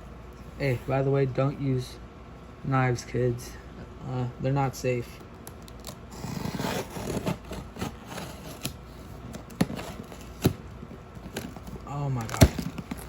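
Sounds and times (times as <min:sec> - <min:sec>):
knife cutting cardboard: 0:05.6 - 0:13.0
box knocks: 0:12.3 - 0:13.0.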